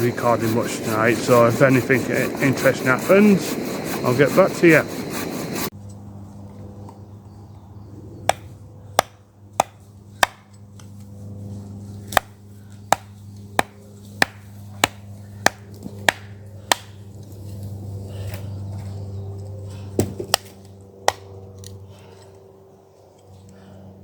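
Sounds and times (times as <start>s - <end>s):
axe chopping firewood: 8.3s - 10.5s, 12.0s - 17.0s, 20.0s - 21.3s.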